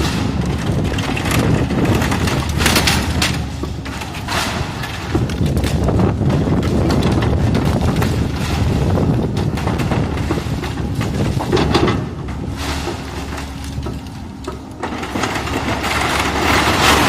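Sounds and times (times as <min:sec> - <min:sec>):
building material crashing: 0:00.0 - 0:17.0
debris clattering: 0:00.0 - 0:17.0
excavator diesel engine running: 0:00.0 - 0:17.0.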